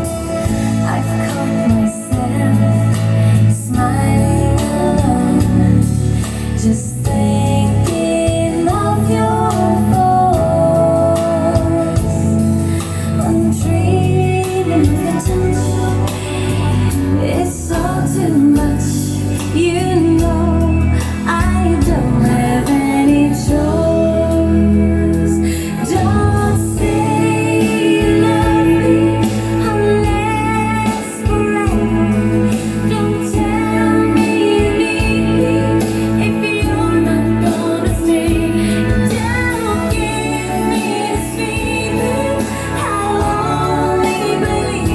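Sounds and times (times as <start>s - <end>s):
song through loudspeaker: 0.0s - 44.9s.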